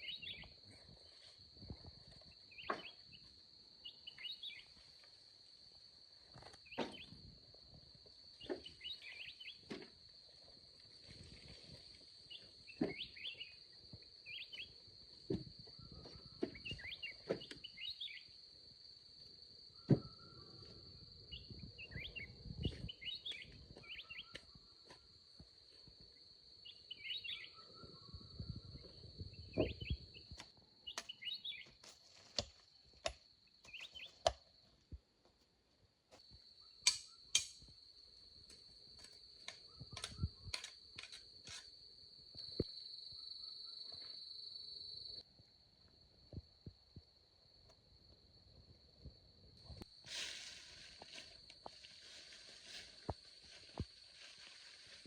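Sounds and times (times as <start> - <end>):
birds chirping: 0.0 - 0.6, 12.3 - 13.7, 15.7 - 18.3, 26.6 - 31.8, 33.7 - 34.2.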